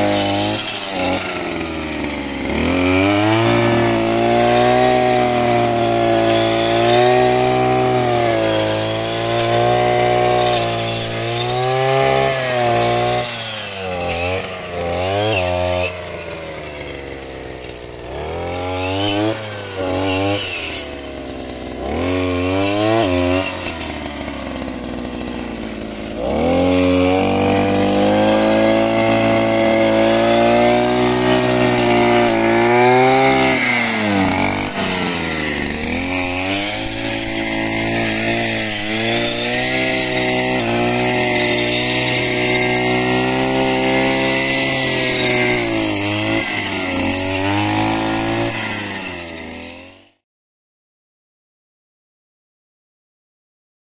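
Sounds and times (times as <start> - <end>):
circular saw blade cutting: 0.0 - 50.1
brush cutter engine revving: 0.0 - 50.2.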